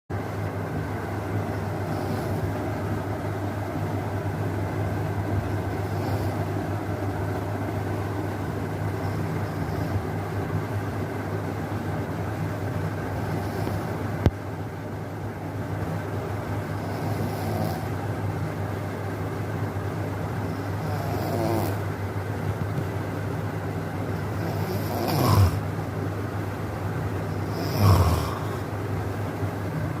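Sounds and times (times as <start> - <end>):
person snoring: 1.7 - 2.6, 5.7 - 6.6, 9.0 - 10.1, 13.1 - 14.0, 16.8 - 17.9, 20.5 - 21.8, 24.3 - 25.6, 27.3 - 28.7.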